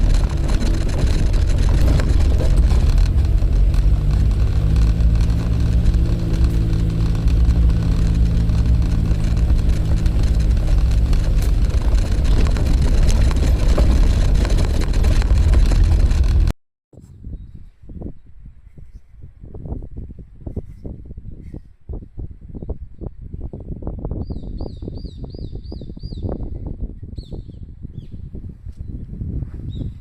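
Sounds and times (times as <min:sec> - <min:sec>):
vehicle engine rumble: 0:00.0 - 0:16.6.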